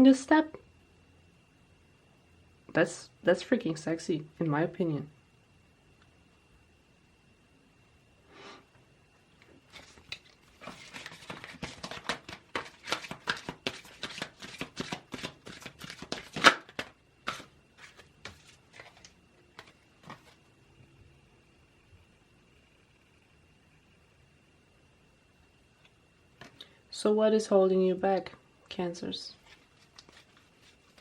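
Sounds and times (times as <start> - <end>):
cards being shuffled: 9.7 - 20.4, 29.4 - 31.0.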